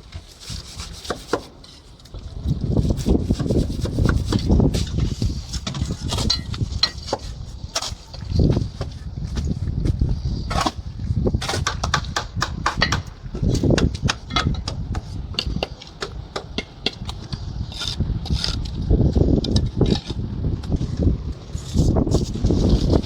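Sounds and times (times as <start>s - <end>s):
mason's tools tapping on block: 11.4s - 17.4s.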